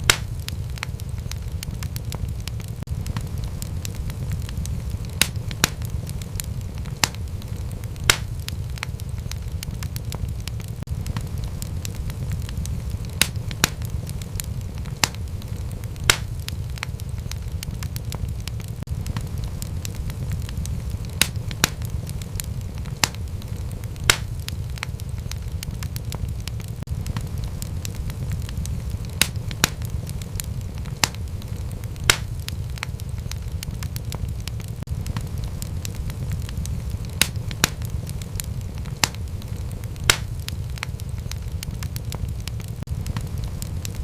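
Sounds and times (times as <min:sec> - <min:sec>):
fire pops: 0:00.0 - 0:44.0
low rumble of flames: 0:00.0 - 0:44.0
wood fire crackling: 0:00.0 - 0:44.0.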